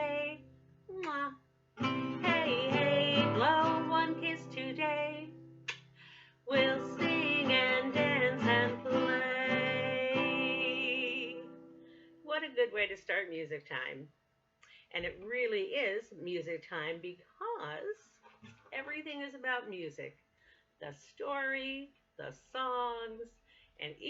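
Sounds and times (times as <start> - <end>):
woman singing: 0.0 - 0.4, 2.1 - 5.4, 6.5 - 11.6
strummed acoustic guitar: 1.8 - 5.2, 6.5 - 11.9.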